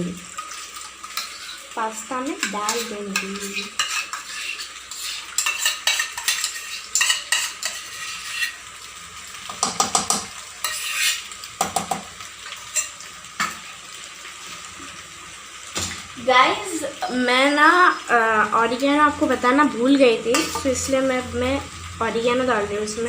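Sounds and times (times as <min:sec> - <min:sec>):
food sizzling in pan: 0:00.0 - 0:23.0
spoon scraping metal pan: 0:00.3 - 0:08.7, 0:09.6 - 0:12.0, 0:12.7 - 0:13.6, 0:20.2 - 0:20.9.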